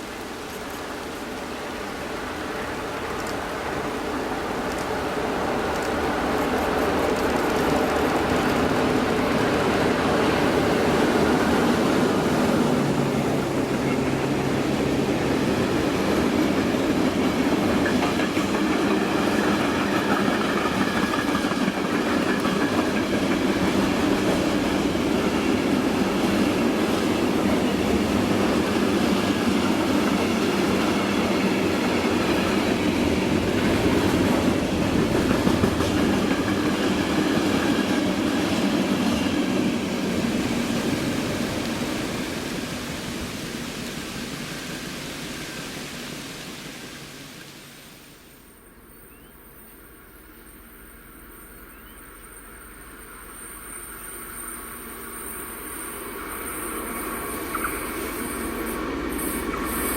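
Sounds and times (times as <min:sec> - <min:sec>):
train wheels clattering over rail joints: 0:16.0 - 0:27.2, 0:27.8 - 0:40.2.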